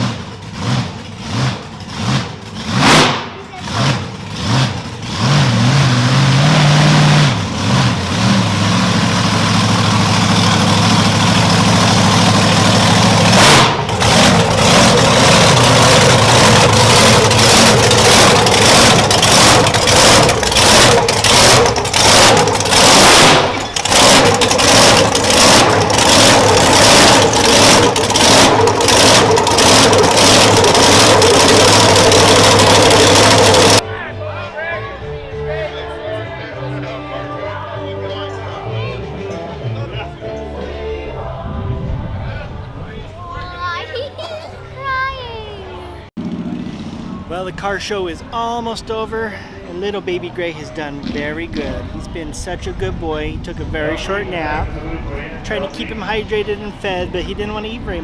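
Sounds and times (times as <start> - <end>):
car engine idling and revving: 0.0 - 33.8, 45.7 - 58.0.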